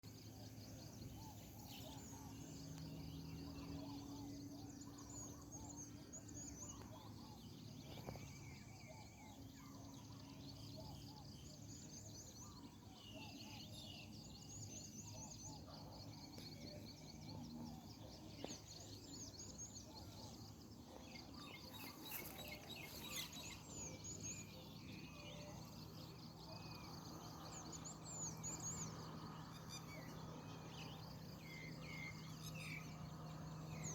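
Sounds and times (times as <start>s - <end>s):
birds chirping and calling: 3.5s - 28.9s.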